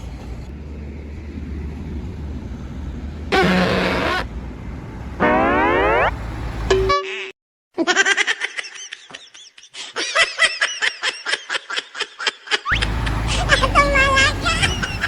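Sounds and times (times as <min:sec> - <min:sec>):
brief tone: 0:06.7 - 0:07.2
high-pitched rapid laughter: 0:07.8 - 0:15.0.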